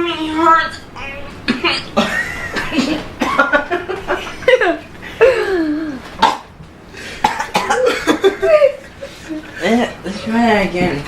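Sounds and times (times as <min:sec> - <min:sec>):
people laughing: 0:02.0 - 0:06.0, 0:07.6 - 0:09.8.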